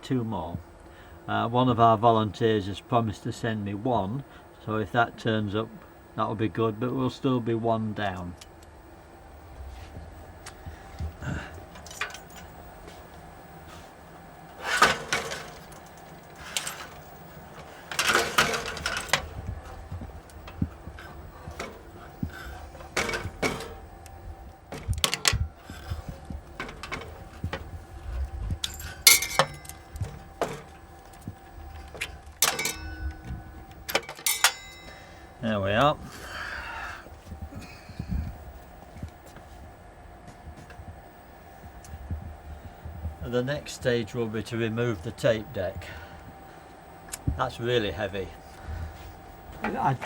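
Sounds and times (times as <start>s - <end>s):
hardware clattering rattles: 10.9s - 12.7s, 14.5s - 24.0s, 24.6s - 35.3s
metallic clicks and clinks: 11.7s - 12.6s, 28.6s - 31.2s, 31.9s - 33.3s, 33.9s - 35.1s.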